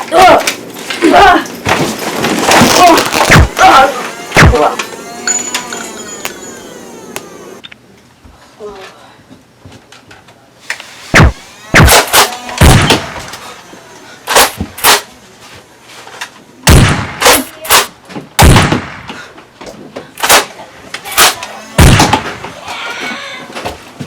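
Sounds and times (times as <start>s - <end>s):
loud sharp bangs and thuds: 1.7s - 4.9s, 11.1s - 13.3s, 16.7s - 17.8s, 18.4s - 19.2s, 21.2s - 22.6s.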